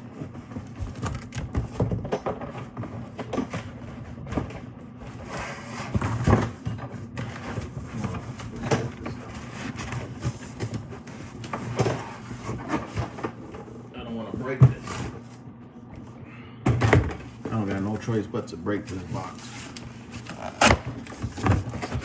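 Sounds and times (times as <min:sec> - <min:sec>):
cardboard box rustling and scraping: 0:00.0 - 0:13.8, 0:18.9 - 0:22.0.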